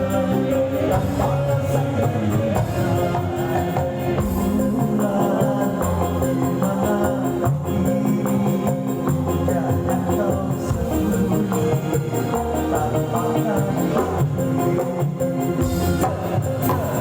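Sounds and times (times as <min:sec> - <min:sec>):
bass notes: 0:00.0 - 0:17.0
melody instruments: 0:00.0 - 0:17.0
tambourine and hi-hat beat: 0:00.0 - 0:17.0.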